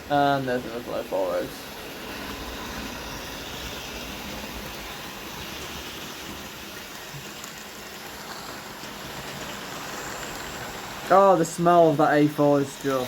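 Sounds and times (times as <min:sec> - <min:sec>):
metal wheels rolling on track: 0:00.0 - 0:13.0
small electric motors whirring: 0:02.1 - 0:11.1.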